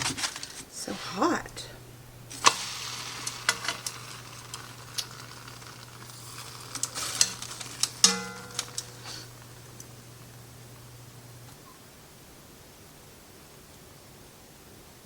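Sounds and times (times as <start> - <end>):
faint sizzle on skillet: 0.5 - 11.9
short ring: 8.0 - 9.2.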